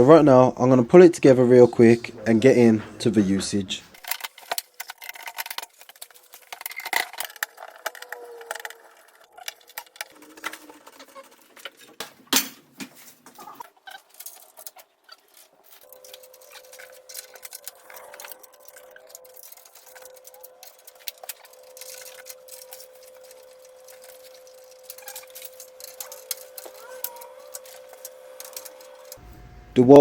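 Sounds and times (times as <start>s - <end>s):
parts clicking and knocking: 1.8s - 29.5s.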